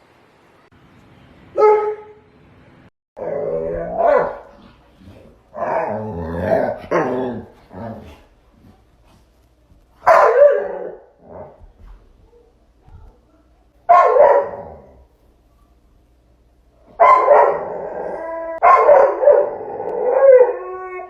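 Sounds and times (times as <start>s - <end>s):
dog barking: 1.6s - 2.2s, 3.7s - 4.5s, 10.0s - 11.1s, 13.9s - 14.9s, 17.0s - 17.7s, 18.6s - 19.6s
dog growling bark-howls: 3.2s - 8.2s, 10.1s - 11.6s, 13.9s - 15.1s, 17.0s - 21.0s.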